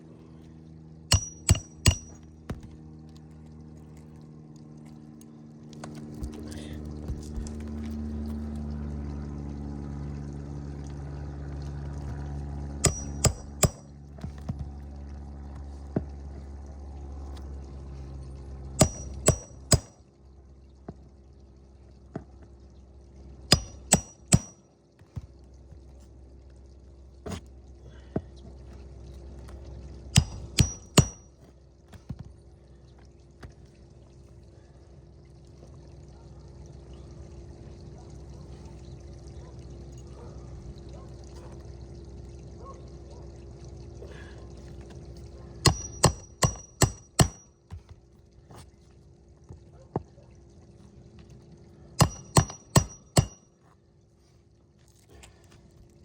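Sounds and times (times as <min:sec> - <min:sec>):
steady low hum: 0:00.0 - 0:21.4, 0:22.6 - 0:35.8
hammer blows on nails: 0:01.1 - 0:02.2, 0:12.8 - 0:13.9, 0:18.8 - 0:19.9, 0:23.5 - 0:24.6, 0:30.2 - 0:31.3, 0:45.7 - 0:47.4, 0:52.0 - 0:53.4
light hammer taps: 0:01.1 - 0:02.7.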